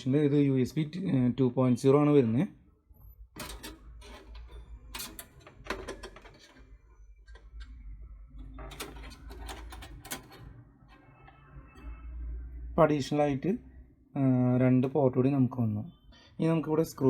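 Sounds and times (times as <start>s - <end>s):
metal hardware clicking and rattling: 3.4s - 7.8s, 8.4s - 10.6s.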